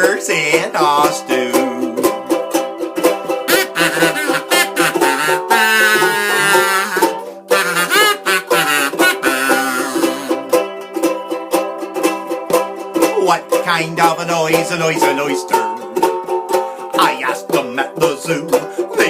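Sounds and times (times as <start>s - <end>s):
ukulele strumming: 0.0s - 19.0s
kazoo buzzing a tune: 3.4s - 10.5s.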